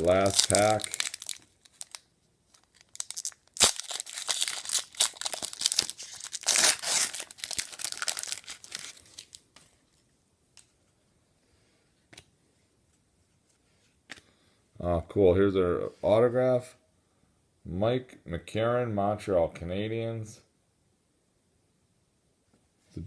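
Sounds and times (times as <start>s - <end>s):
card pack wrapper tearing and crinkling: 0.0s - 9.5s
cards being handled: 0.0s - 10.8s, 12.0s - 14.4s.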